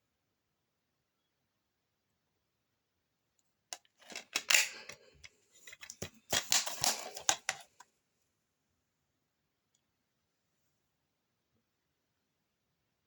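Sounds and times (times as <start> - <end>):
plastic case rustling: 3.8 - 7.8
plastic case clicks: 4.0 - 5.0, 5.7 - 7.8.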